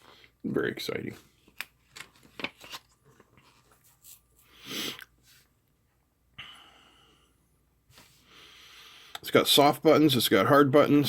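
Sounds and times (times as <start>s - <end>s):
faint handling sounds: 0.0s - 6.0s.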